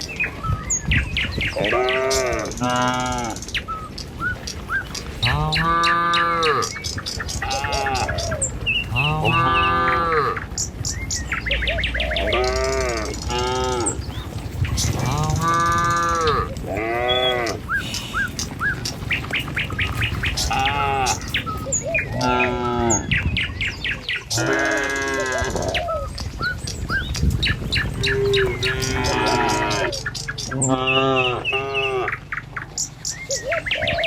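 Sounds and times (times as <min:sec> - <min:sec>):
birds chirping: 0:00.0 - 0:34.0
cattle mooing: 0:01.6 - 0:03.4, 0:05.2 - 0:06.7, 0:08.9 - 0:10.4, 0:12.2 - 0:14.1, 0:14.9 - 0:18.5, 0:20.4 - 0:21.3, 0:22.1 - 0:23.0, 0:28.1 - 0:30.0, 0:30.6 - 0:32.2.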